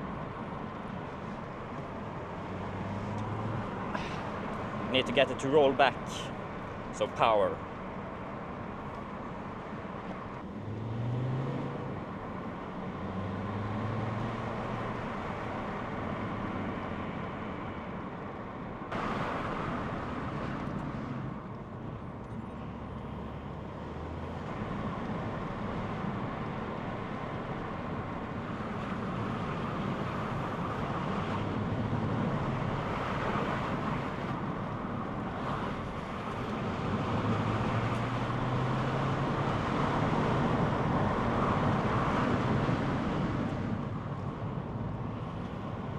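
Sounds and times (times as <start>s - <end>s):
road and tyre noise: 0.0s - 45.9s
diesel engine revving: 10.4s - 16.7s, 36.3s - 43.7s.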